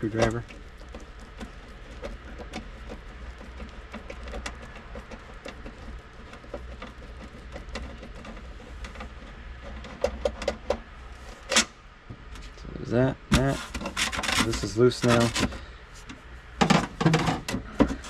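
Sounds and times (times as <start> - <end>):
steady low hum: 0.0 - 18.0
screwdriver clicks and scrapes: 13.4 - 16.2.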